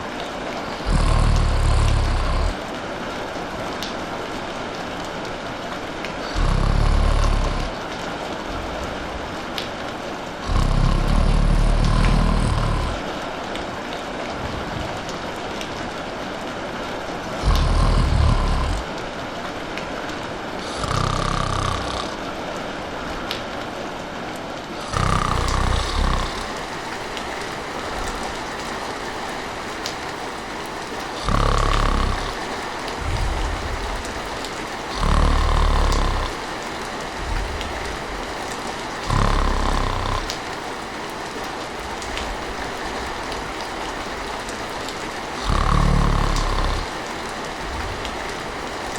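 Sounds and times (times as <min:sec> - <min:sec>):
person snoring: 0:00.0 - 0:02.6, 0:06.2 - 0:07.9, 0:10.4 - 0:13.0, 0:17.4 - 0:18.9, 0:20.6 - 0:22.2, 0:24.8 - 0:27.0, 0:31.0 - 0:40.5, 0:44.0 - 0:48.9
rain hissing: 0:00.0 - 0:48.9.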